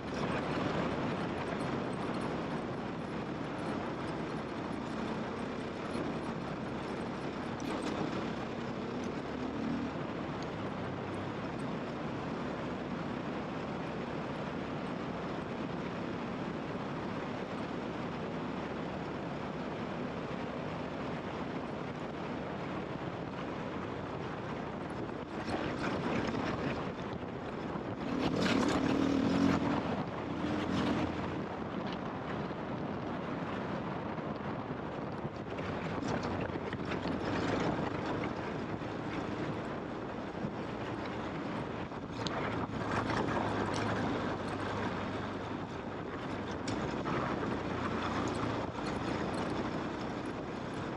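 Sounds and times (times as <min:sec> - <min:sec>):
motorcycle engine revving: 0:28.0 - 0:31.5.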